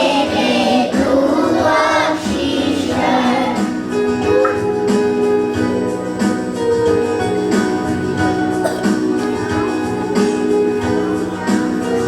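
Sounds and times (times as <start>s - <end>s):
children's chorus singing: 0.0s - 4.6s
instrumental backing with steady beat: 0.0s - 12.0s.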